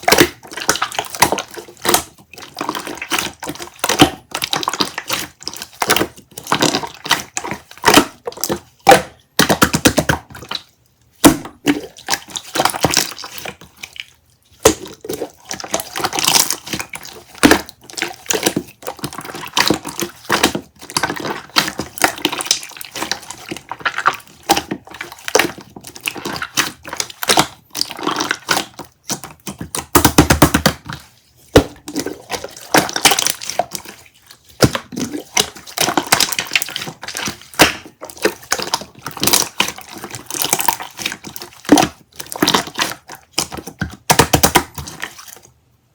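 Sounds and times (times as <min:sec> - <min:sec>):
clicks knocks and crunching: 0:14.6 - 0:31.0.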